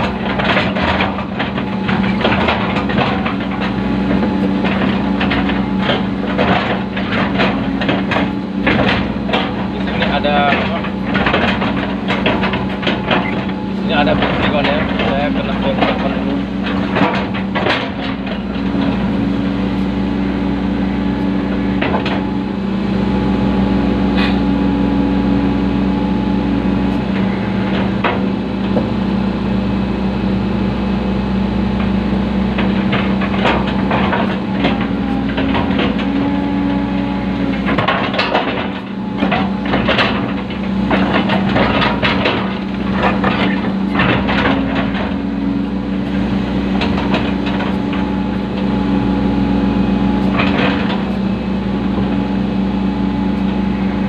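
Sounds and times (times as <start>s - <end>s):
bucket clanking and scraping on metal: 0.0s - 20.2s
excavator diesel engine: 0.0s - 54.0s.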